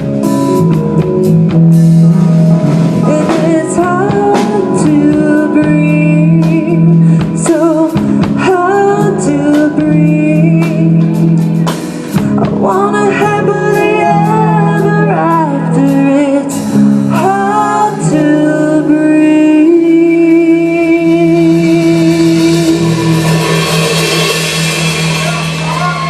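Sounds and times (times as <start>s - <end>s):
live rock band playing: 0.0s - 26.0s
person singing: 2.2s - 24.2s
cymbal wash: 21.7s - 26.0s.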